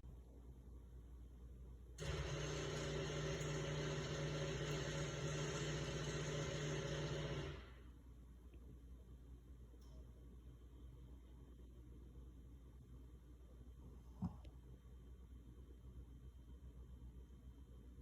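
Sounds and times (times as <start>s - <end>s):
ice machine humming and whirring: 2.0s - 7.9s.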